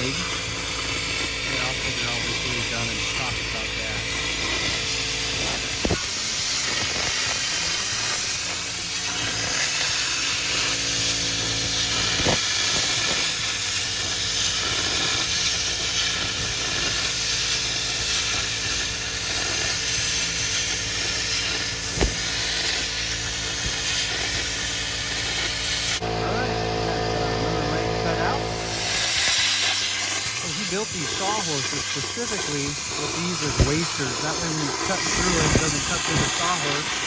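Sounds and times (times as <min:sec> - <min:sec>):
plasma cutter hissing: 0:00.0 - 0:37.0
low machine hum: 0:20.9 - 0:37.0.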